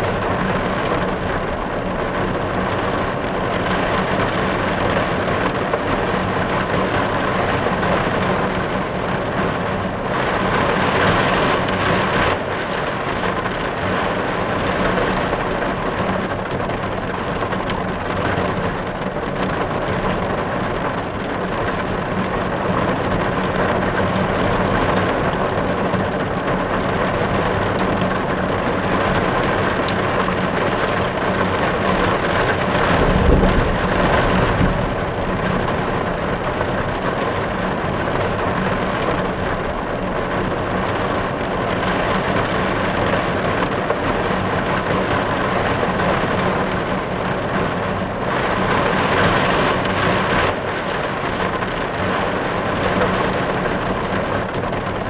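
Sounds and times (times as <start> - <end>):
rain drumming on car roof: 0.0 - 55.0
low rumbling: 31.7 - 38.3.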